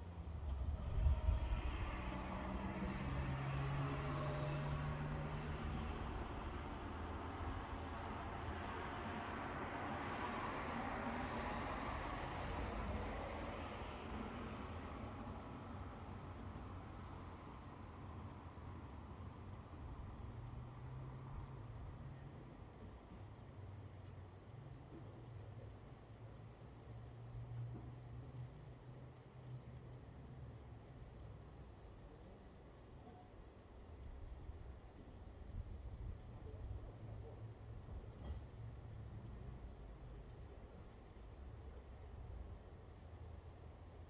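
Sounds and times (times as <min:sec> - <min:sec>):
crickets chirping: 0:00.0 - 0:44.0
low rumble: 0:00.2 - 0:03.1.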